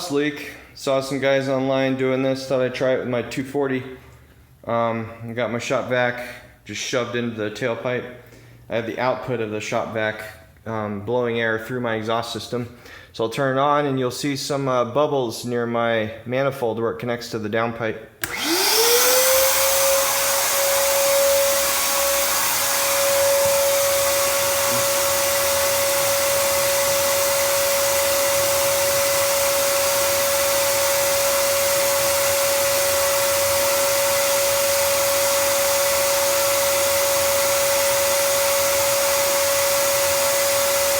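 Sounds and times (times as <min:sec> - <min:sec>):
shop vac motor whine: 0:18.2 - 0:40.9.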